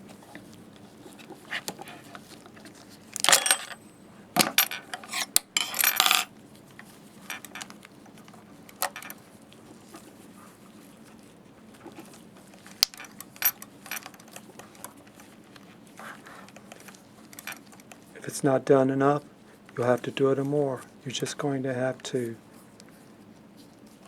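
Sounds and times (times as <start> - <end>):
metal hand tools clinking and scraping: 3.2 - 3.8, 4.6 - 6.3.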